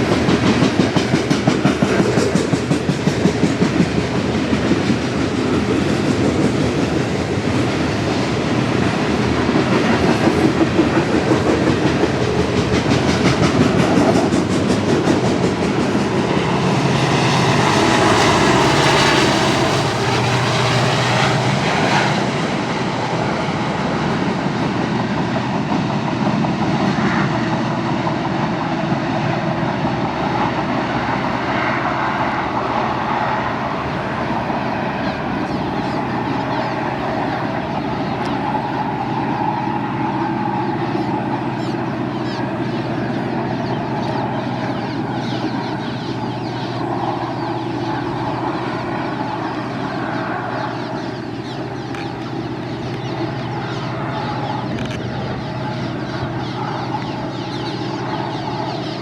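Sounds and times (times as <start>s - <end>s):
train wheels clacking over rail joints: 0.0s - 22.5s
train rumble: 0.0s - 59.0s.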